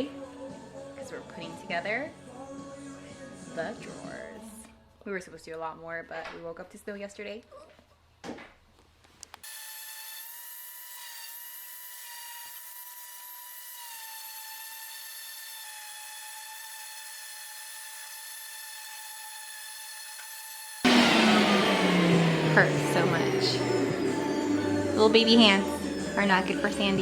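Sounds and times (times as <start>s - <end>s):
electric sander on wood: 16.3s - 27.0s.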